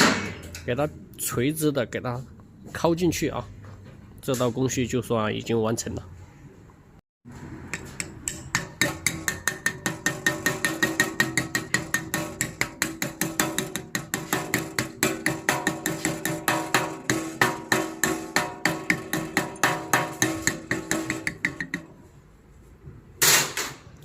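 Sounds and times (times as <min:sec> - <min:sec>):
hammer tapping metal: 0:07.7 - 0:22.1.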